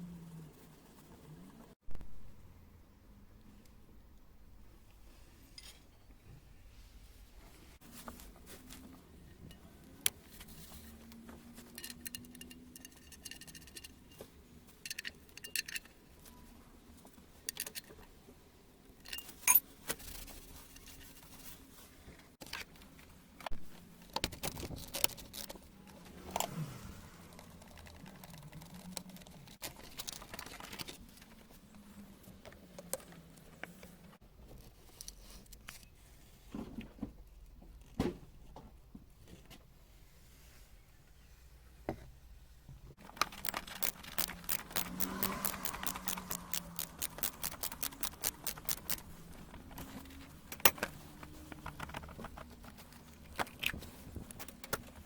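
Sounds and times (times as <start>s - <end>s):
small hard objects clinking: 43.2s - 49.0s.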